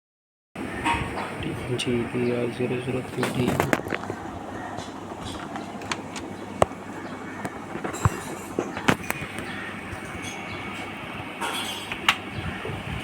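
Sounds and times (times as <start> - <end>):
laptop case and tools clicking: 3.2 - 4.2, 4.8 - 6.8, 7.5 - 9.5.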